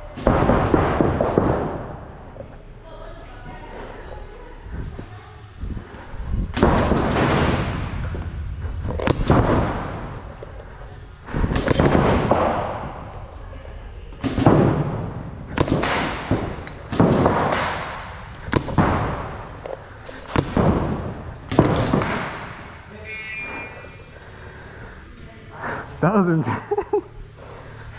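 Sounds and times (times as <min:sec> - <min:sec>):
loud blasts: 0:05.5 - 0:13.3, 0:14.2 - 0:24.5.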